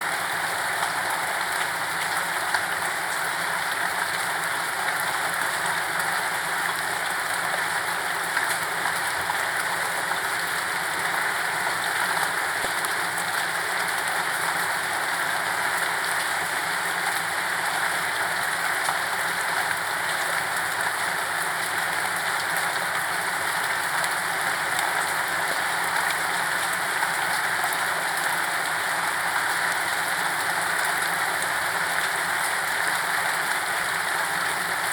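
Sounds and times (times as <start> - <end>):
steady rain: 0.0 - 34.9.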